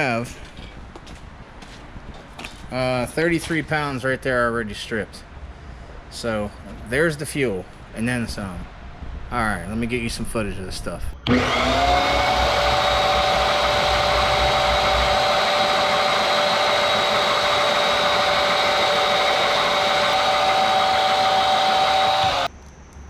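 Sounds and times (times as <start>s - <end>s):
electric motor whining: 11.2s - 22.5s.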